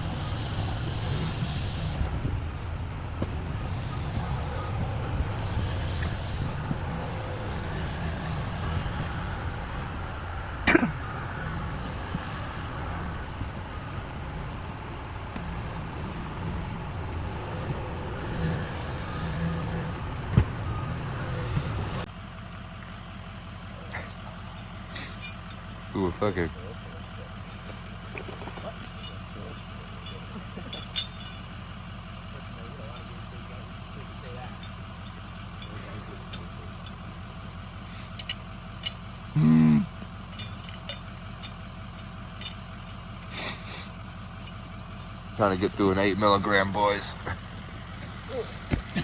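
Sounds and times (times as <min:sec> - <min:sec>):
sharp clack with falling squeal: 0:00.0 - 0:22.1
truck engine rumbling: 0:00.0 - 0:49.0.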